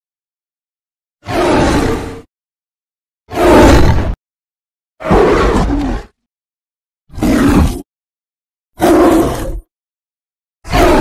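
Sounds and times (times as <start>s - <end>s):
creature roaring: 1.2s - 2.3s, 3.3s - 4.2s, 5.0s - 6.2s, 7.1s - 7.9s, 8.8s - 9.7s, 10.6s - 11.0s.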